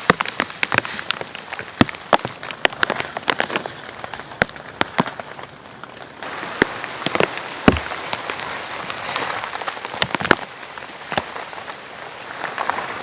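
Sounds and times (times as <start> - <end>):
large raindrops striking surface: 0.0 - 13.0
rain falling: 0.0 - 13.0.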